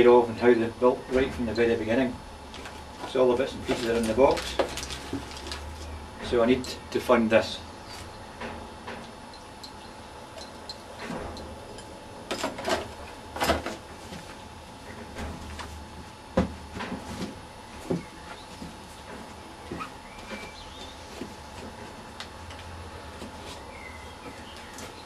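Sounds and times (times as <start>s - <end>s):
objects knocking and clunking: 2.5s - 6.4s.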